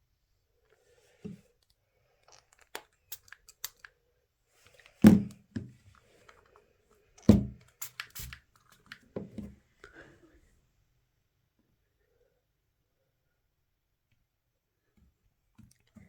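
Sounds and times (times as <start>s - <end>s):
small tool clicks and ticks: 2.8s - 3.9s.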